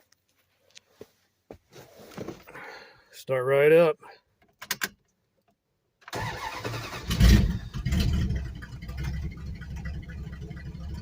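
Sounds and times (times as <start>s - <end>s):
loud engine starting and idling: 6.1s - 11.0s.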